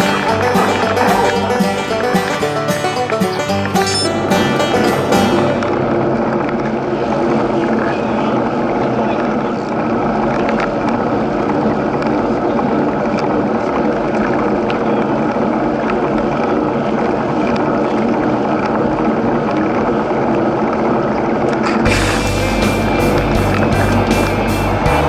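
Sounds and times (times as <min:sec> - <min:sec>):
music with heavy bass beat: 0:21.9 - 0:25.0.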